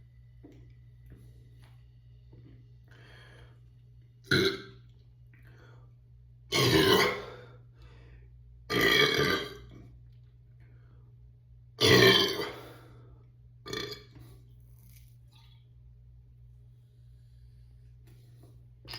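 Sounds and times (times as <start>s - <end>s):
person burping: 4.2s - 4.8s, 6.5s - 7.4s, 8.7s - 9.8s, 11.8s - 12.7s, 13.6s - 14.2s.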